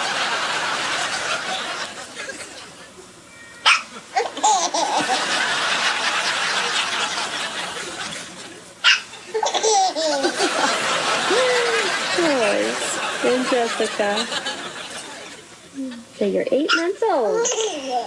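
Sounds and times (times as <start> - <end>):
baby laughing: 3.7 - 5.3, 8.9 - 10.6, 17.3 - 18.0.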